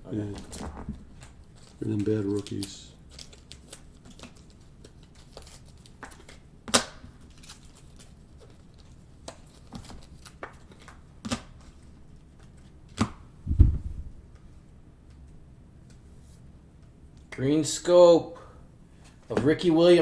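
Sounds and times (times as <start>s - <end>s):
cards clicking and tapping: 1.2s - 11.8s.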